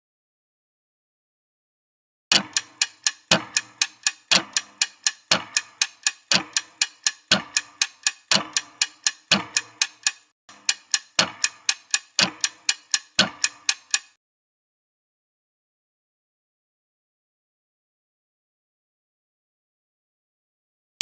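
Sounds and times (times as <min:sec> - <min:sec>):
ticking clock countdown: 0:02.3 - 0:14.2.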